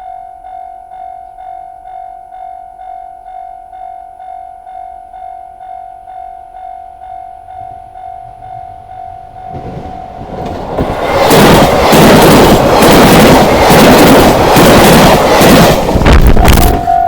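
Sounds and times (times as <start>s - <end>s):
level-crossing alarm bell dinging: 0.0s - 15.7s, 16.7s - 17.0s
electric train rushing past: 6.6s - 17.0s
wind buffeting microphone: 7.4s - 17.0s.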